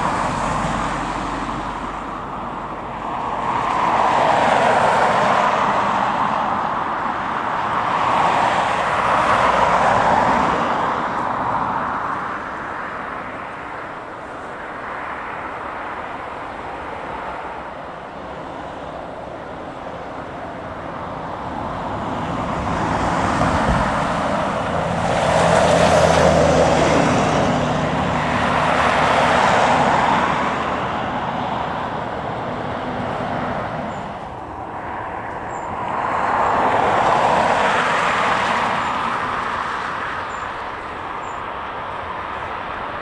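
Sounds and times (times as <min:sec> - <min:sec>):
passing vehicles engine noise: 0:00.0 - 0:43.0.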